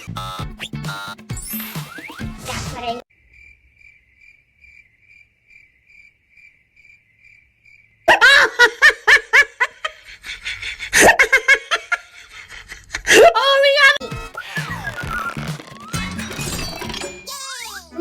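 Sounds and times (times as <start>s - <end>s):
cricket chirping: 3.1s - 8.1s
high-pitched laughter: 8.1s - 15.4s.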